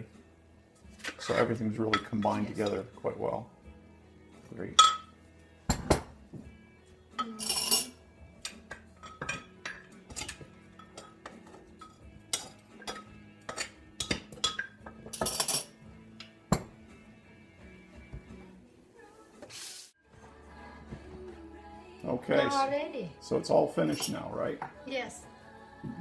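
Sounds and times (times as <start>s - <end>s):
spoon scraping dishes: 0.9s - 2.8s, 9.0s - 15.8s
spoon clinking against dishes: 1.2s - 2.8s, 4.8s - 6.0s, 7.2s - 16.7s, 23.9s - 24.8s.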